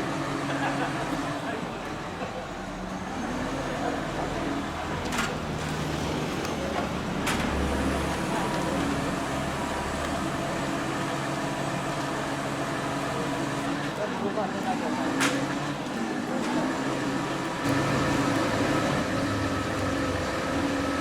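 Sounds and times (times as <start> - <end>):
vehicle engine running: 16.8 - 21.0.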